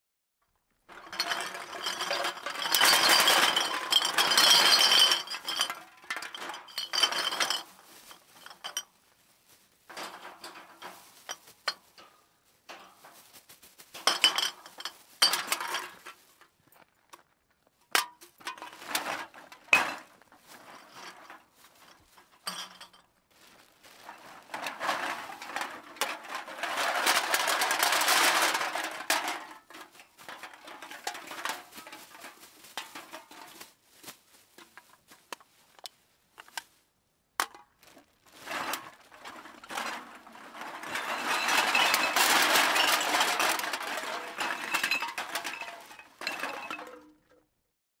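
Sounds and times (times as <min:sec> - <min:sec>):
cans clattering on floor: 0:00.9 - 0:07.8, 0:14.0 - 0:16.2, 0:24.2 - 0:33.7, 0:38.4 - 0:47.2.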